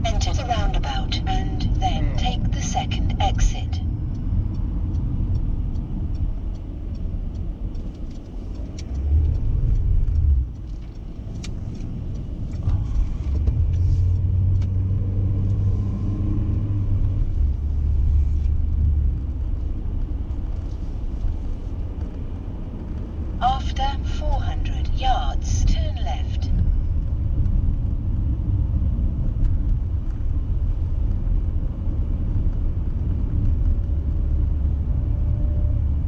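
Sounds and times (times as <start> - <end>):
car road and engine rumble: 0.0 - 36.0.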